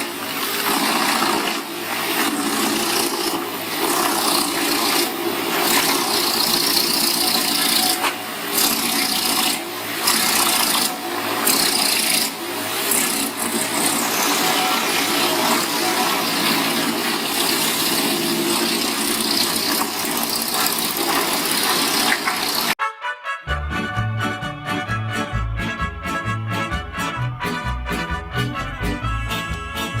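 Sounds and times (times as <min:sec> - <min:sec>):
wood chipper shredding wood: 0:00.0 - 0:22.8.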